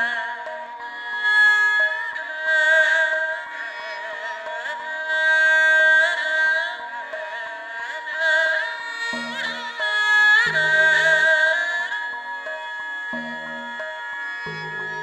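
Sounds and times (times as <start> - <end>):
bowed string melody: 0.0 - 15.0
ensemble held tones: 14.5 - 15.0.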